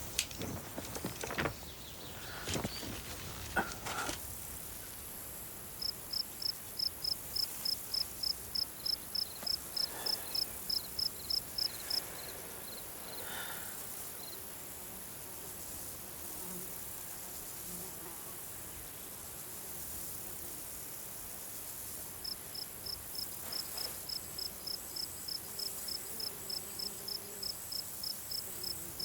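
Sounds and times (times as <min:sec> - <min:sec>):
high insect hiss: 0:01.2 - 0:29.0
cricket chirping: 0:05.8 - 0:14.4.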